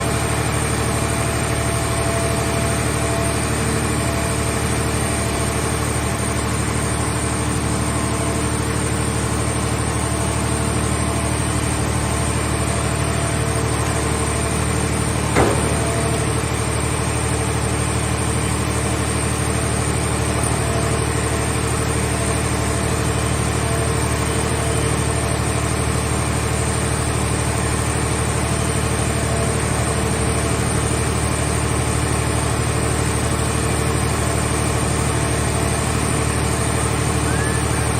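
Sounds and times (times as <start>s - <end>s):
baler machine drone: 0.0s - 37.9s
sharp metal clank: 15.4s - 16.5s.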